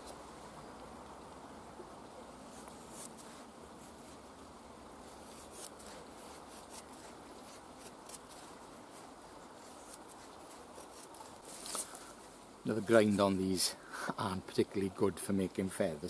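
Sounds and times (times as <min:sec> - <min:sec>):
low background hiss: 0:00.0 - 0:16.0
knife shaving wooden stick: 0:02.3 - 0:12.0.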